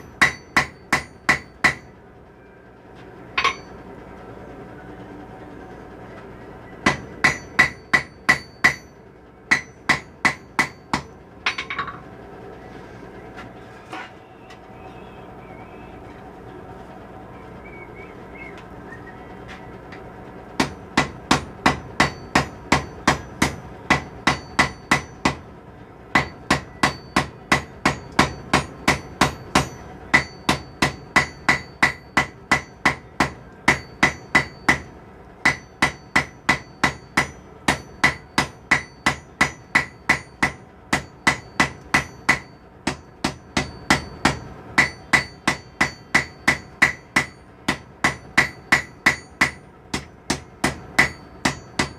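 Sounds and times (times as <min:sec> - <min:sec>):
hammer striking steel on anvil: 0:00.0 - 0:02.0, 0:03.4 - 0:03.8, 0:06.8 - 0:12.1, 0:20.6 - 0:25.4, 0:26.1 - 0:51.9.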